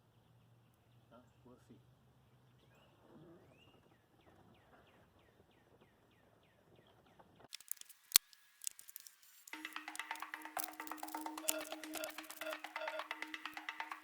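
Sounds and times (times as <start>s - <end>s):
sharp clicks: 7.6s - 14.0s
music with wood-block beat: 9.0s - 14.0s.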